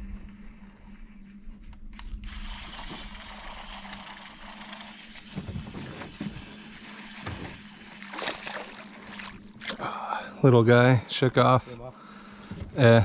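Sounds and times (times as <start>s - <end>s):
wind: 0.0s - 13.0s
boat motor humming: 2.8s - 13.0s
water noise: 5.3s - 10.1s.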